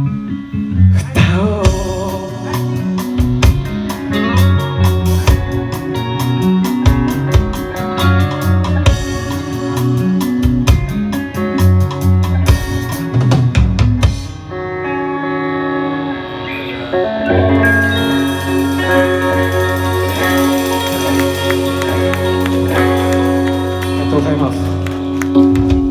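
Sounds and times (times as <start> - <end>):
bass guitar: 0.0 - 25.9
electric guitar: 0.0 - 25.9
drum kit: 1.2 - 14.6, 17.5 - 25.9
cymbals: 17.6 - 25.3.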